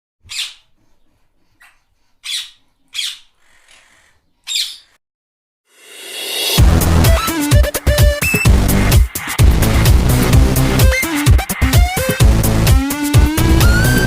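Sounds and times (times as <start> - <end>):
bird squawking: 0.2 - 0.8, 1.6 - 5.0
rising whoosh: 5.7 - 6.8.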